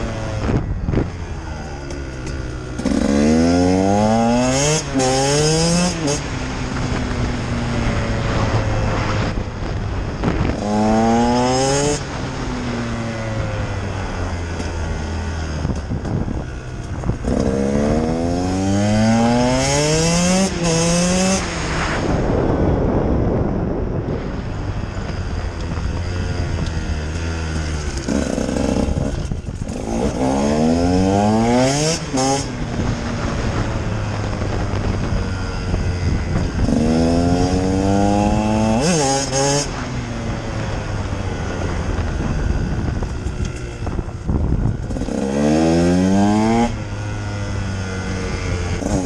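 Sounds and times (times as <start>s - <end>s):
two-stroke engine revving: 0.0s - 9.4s, 10.2s - 12.6s, 17.0s - 21.8s, 26.1s - 35.0s, 35.6s - 39.8s, 40.6s - 49.0s.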